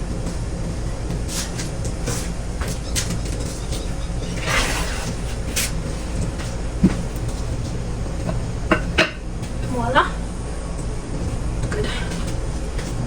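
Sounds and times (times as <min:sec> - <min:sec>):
steady low rumble: 0:05.0 - 0:13.0.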